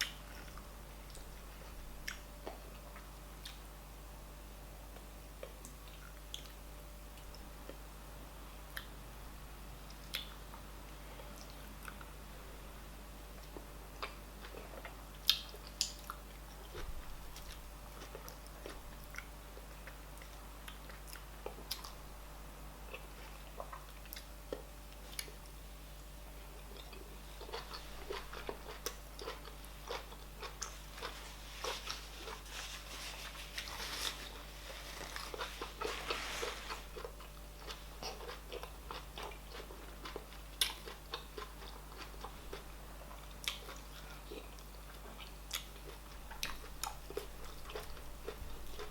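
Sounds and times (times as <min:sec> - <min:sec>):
chewing: 0:13.4 - 0:22.0, 0:26.6 - 0:48.9.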